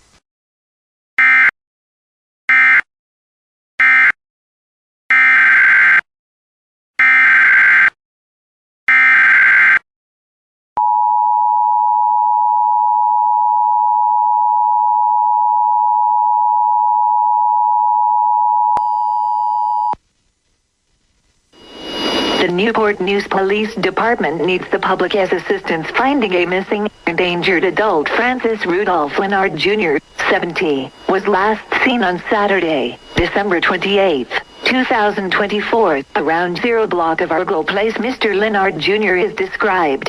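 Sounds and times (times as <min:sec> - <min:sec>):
two-tone attention signal: 0:21.6 - 0:22.5.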